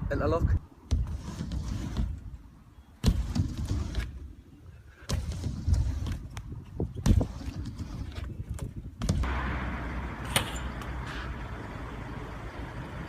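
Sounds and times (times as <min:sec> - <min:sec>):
wind on microphone: 0:03.0 - 0:09.3.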